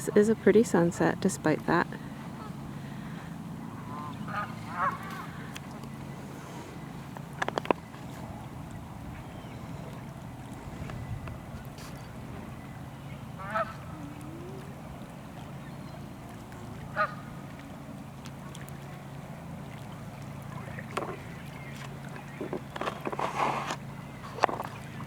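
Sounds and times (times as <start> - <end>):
geese honking: 0.0 - 5.4, 13.3 - 14.8, 15.9 - 17.5
steady low hum: 0.0 - 25.0.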